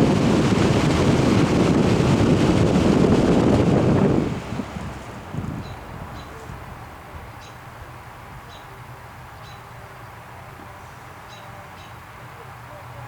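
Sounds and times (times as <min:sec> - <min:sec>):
fan motor humming: 0:00.0 - 0:09.4.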